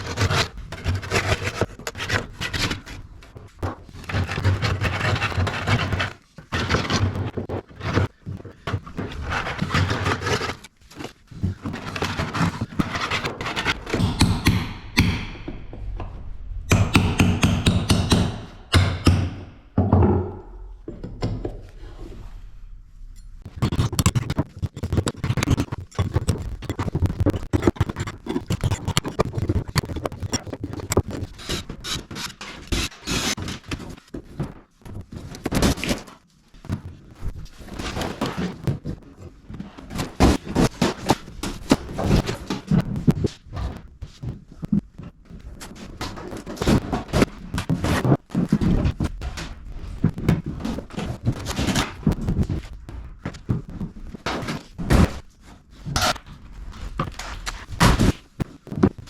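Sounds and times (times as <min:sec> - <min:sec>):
scraping wood: 0:00.0 - 0:14.8, 0:23.4 - 0:34.0.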